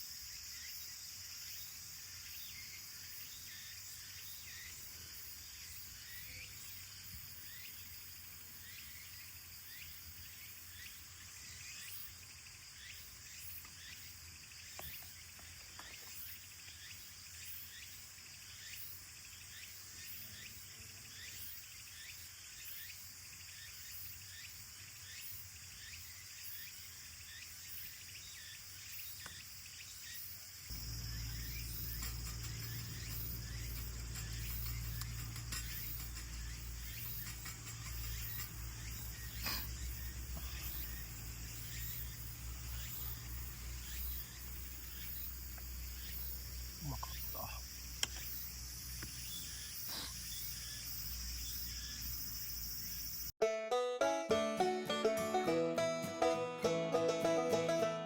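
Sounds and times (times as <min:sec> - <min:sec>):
insects chirping: 0:00.0 - 0:53.4, 0:54.3 - 0:58.0
loud low hum: 0:30.7 - 0:39.2.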